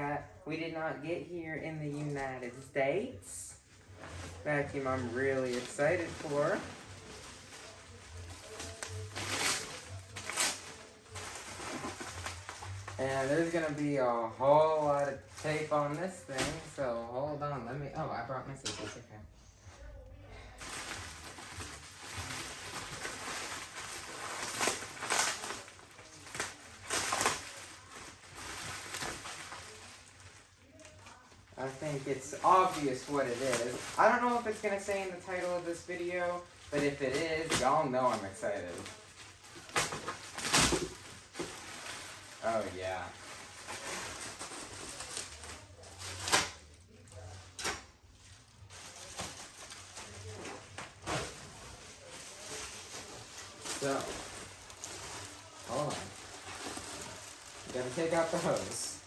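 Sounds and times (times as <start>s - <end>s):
cardboard rustling: 3.8s - 14.6s
tape tearing: 5.6s - 13.6s, 20.8s - 29.8s, 39.5s - 42.7s, 43.4s - 46.8s.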